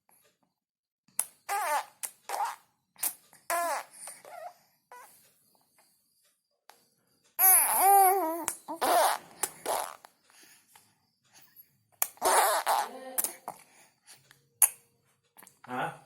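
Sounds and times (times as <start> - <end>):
baby making vocal sounds: 3.5 - 5.0, 7.4 - 10.0, 12.0 - 13.7.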